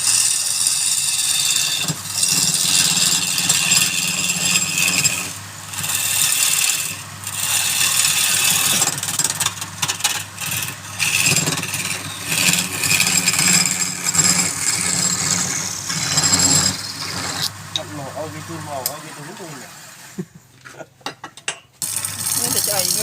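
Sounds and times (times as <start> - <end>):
turning tool scraping wood: 0.0 - 20.0, 21.8 - 23.0
wood lathe motor hum: 0.0 - 20.2, 21.8 - 23.0.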